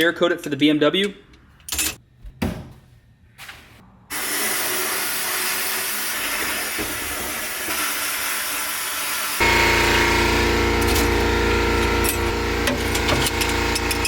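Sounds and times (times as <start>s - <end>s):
sandblaster hissing: 4.1s - 14.0s
machine hum with low drone: 9.4s - 14.0s.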